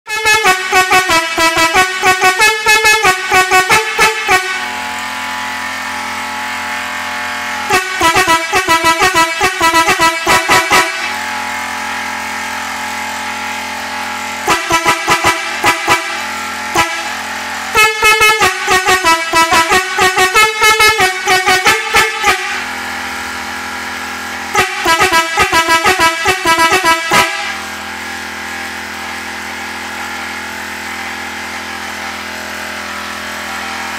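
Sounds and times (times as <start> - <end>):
musical air horn playing tunes: 0.1 - 5.5, 7.6 - 13.0, 14.2 - 23.0, 24.4 - 27.9.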